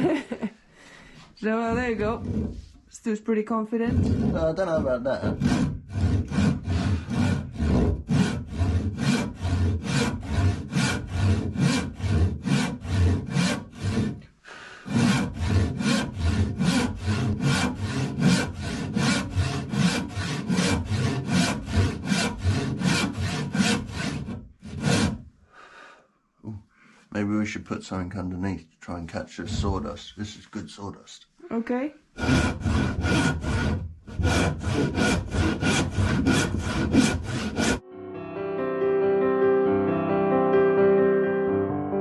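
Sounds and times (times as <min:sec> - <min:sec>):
hand saw cutting wood: 0:01.7 - 0:02.7, 0:03.9 - 0:25.2, 0:32.2 - 0:37.8.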